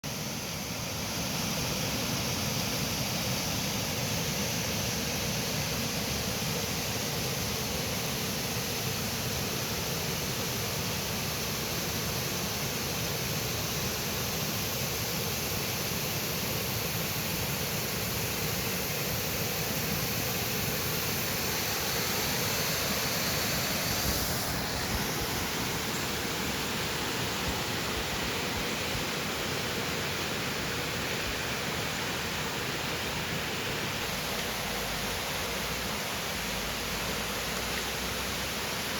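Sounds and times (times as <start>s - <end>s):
river rushing over rocks: 0.1s - 38.9s.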